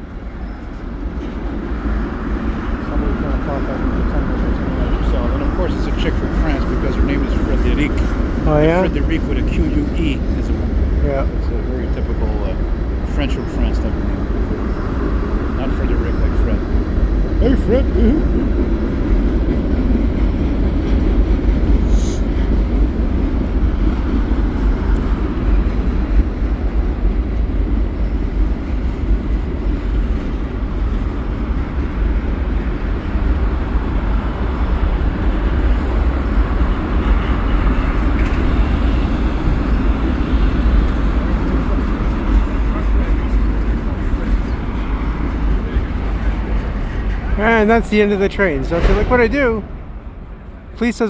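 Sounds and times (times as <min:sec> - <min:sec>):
freight train rolling over bridge: 0:00.0 - 0:51.0.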